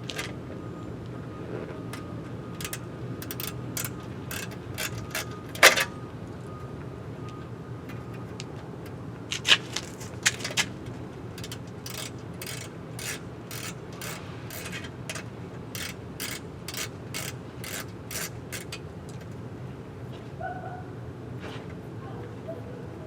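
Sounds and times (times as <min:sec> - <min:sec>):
hand tool clicking: 0:02.6 - 0:05.9, 0:11.4 - 0:19.3
tool clicks and knocks: 0:02.6 - 0:06.0, 0:09.3 - 0:10.8, 0:11.4 - 0:19.4.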